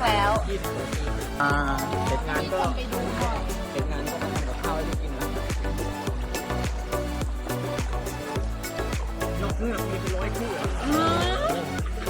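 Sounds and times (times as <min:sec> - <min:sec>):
music with steady beat and bass: 0:00.0 - 0:12.0.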